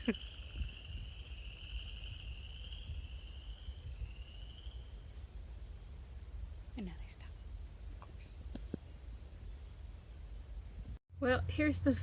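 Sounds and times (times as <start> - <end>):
frogs calling: 0.0 - 5.2
low steady rumble: 0.0 - 12.0.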